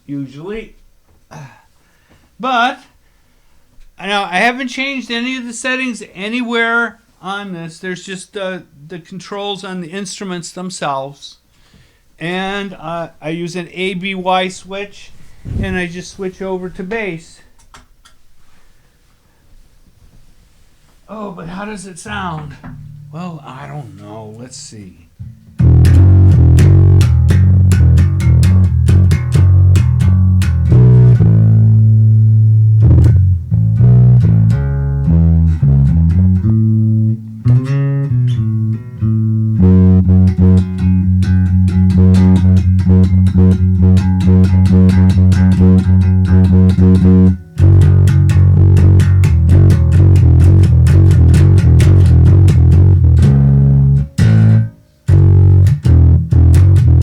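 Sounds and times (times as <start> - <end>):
electric bass guitar notes: 22.1 - 57.0.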